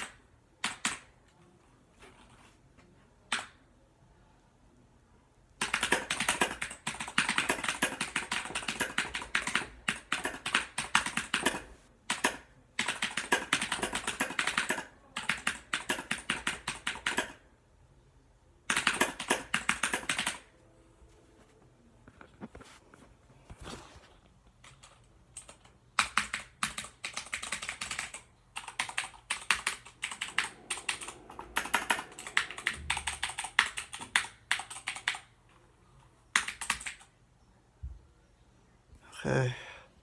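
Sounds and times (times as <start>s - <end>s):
fast typing on keyboard: 0.0s - 1.1s, 5.6s - 17.4s, 18.7s - 20.5s, 24.6s - 35.3s, 36.3s - 37.1s.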